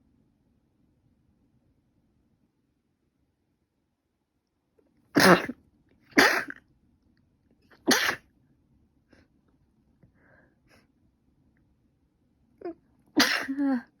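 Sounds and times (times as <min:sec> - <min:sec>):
person sneezing: 0:05.2 - 0:05.6, 0:06.2 - 0:06.6, 0:07.9 - 0:08.2, 0:13.2 - 0:13.9
breathing: 0:10.0 - 0:10.9.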